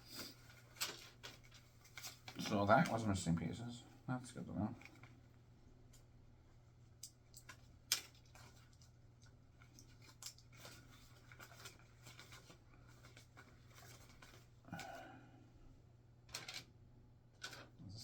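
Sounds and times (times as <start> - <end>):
plastic pieces clicking and rattling: 16.3 - 16.6.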